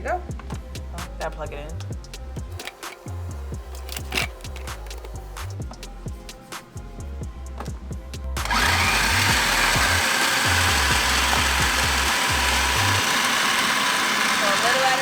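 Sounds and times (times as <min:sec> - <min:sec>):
music with bass beat: 0:00.0 - 0:13.0
food processor motor: 0:02.6 - 0:05.1, 0:08.4 - 0:15.0.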